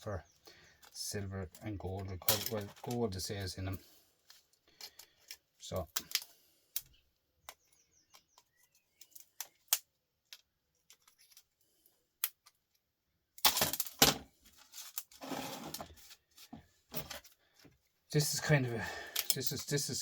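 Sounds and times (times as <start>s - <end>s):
metal and plastic parts rattling: 0.7s - 6.9s, 7.6s - 11.6s, 13.4s - 16.1s, 16.9s - 17.8s.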